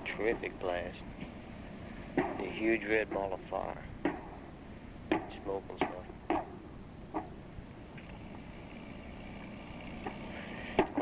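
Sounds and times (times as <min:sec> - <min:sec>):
tape hiss and hum: 0:00.0 - 0:11.0.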